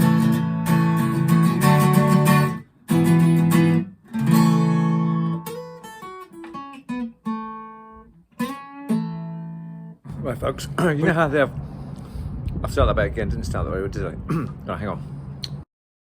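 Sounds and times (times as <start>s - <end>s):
guitar notes picked singly: 0.0s - 11.1s
acoustic guitar strumming: 0.0s - 12.3s.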